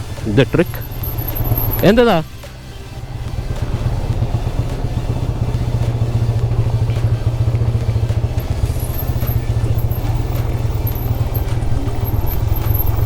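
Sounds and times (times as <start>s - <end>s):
motorcycle engine at low revs: 0.0s - 13.0s
light clatter: 3.4s - 13.0s.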